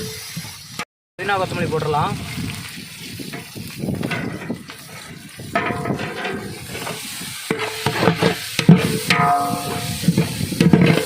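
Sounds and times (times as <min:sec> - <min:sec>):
masala sizzling in oil: 0:00.0 - 0:11.0
ladle scraping in pot: 0:04.1 - 0:11.0.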